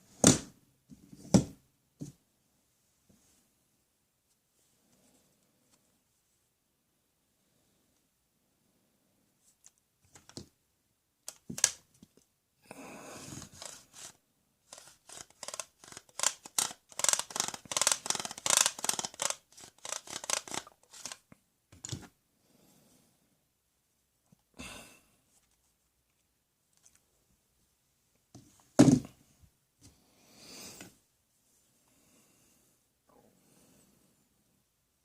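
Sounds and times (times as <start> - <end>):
handling clicks and snips: 14.7 - 22.0.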